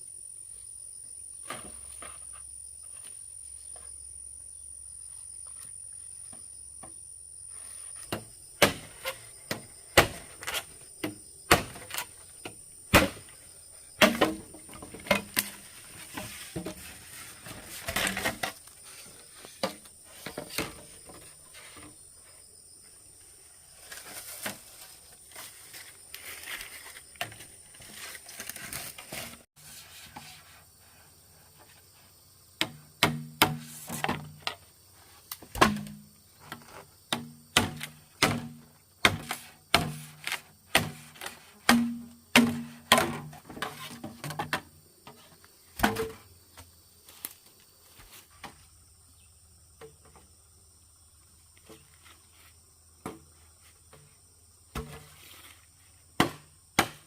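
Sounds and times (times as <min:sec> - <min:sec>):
sharp hollow knocks: 0:08.1 - 0:10.3, 0:14.0 - 0:15.6, 0:32.6 - 0:34.3, 0:41.7 - 0:43.4.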